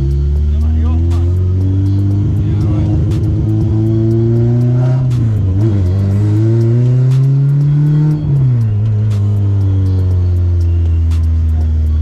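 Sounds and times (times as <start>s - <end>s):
car engine accelerating: 0.0s - 12.0s.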